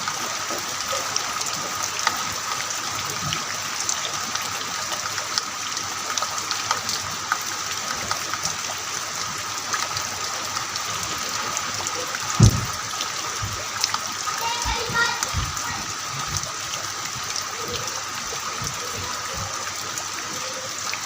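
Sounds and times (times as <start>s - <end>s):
heavy rain falling: 0.0s - 21.0s
short low thump: 12.4s - 12.8s.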